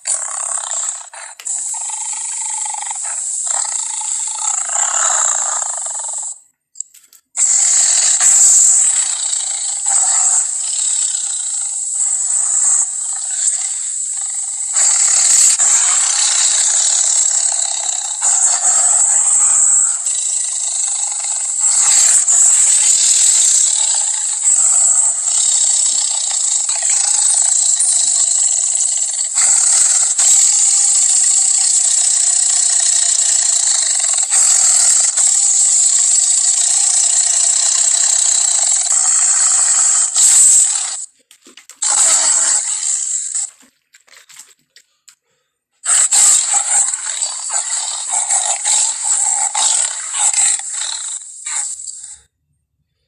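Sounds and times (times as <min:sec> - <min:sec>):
harsh high-pitched creature calls: 0:07.4 - 0:41.1, 0:41.8 - 0:43.7, 0:45.9 - 0:52.2.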